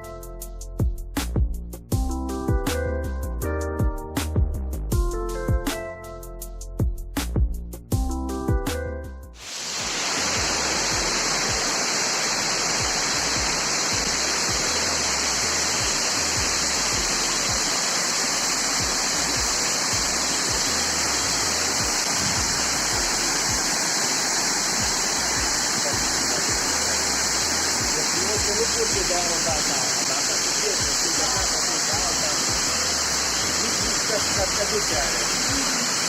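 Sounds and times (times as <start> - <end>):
waterfall rushing: 9.4 - 36.0.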